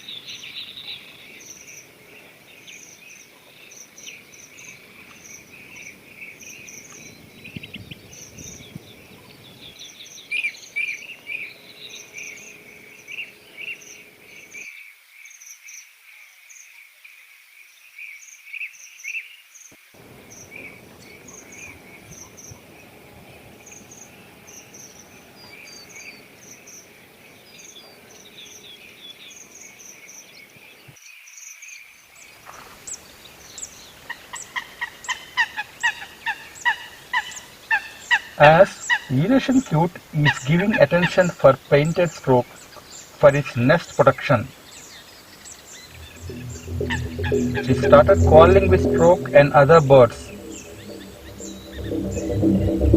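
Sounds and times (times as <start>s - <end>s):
insects: 14.3s - 25.3s.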